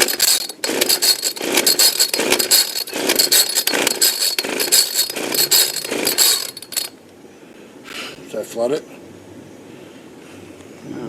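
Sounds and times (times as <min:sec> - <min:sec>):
chainsaw starter cord pulls: 0:00.0 - 0:07.0.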